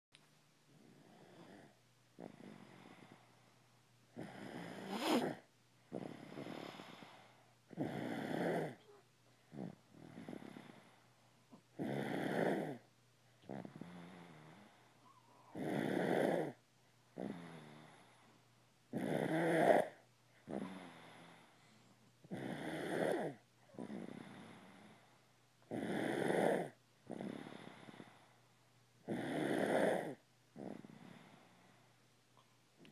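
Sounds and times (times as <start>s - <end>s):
quiet breathing: 0.6s - 32.9s
loud rasping snore: 4.2s - 7.1s, 7.7s - 8.9s, 9.5s - 10.8s, 11.8s - 12.8s, 15.5s - 16.6s, 17.2s - 18.0s, 18.9s - 21.2s, 22.3s - 24.9s, 25.7s - 28.1s, 29.0s - 31.3s.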